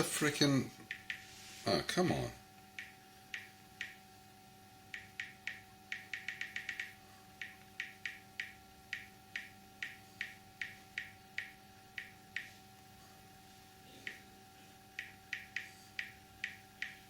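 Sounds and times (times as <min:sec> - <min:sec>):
smartphone keyboard typing clicks: 0:04.9 - 0:12.5.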